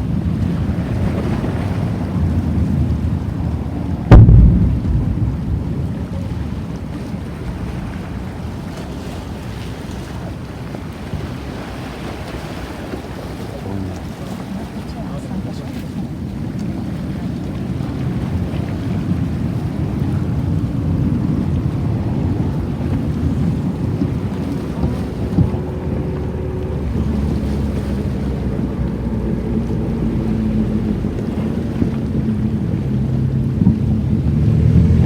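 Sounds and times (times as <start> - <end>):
wind buffeting microphone: 0.0 - 35.0
short thump: 4.1 - 6.5.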